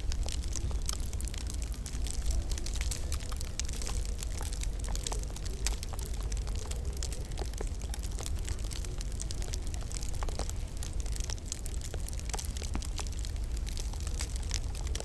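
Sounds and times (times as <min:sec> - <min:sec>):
low fire rumble: 0:00.0 - 0:15.0
wood fire crackling: 0:00.0 - 0:15.0.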